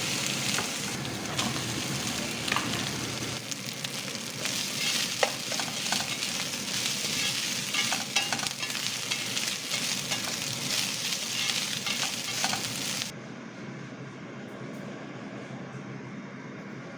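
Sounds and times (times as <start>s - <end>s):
food sizzling in a hot pan: 0.0s - 13.1s
spatula scraping and tapping: 4.8s - 12.7s.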